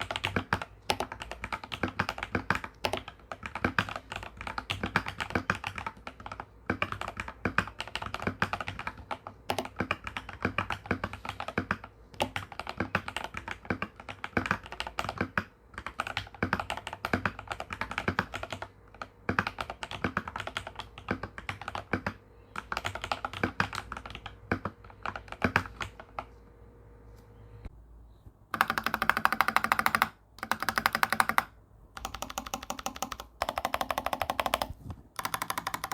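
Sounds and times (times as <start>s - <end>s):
mechanical keyboard typing: 0.0s - 26.3s, 28.5s - 35.9s
rapid key hammering: 28.6s - 35.9s.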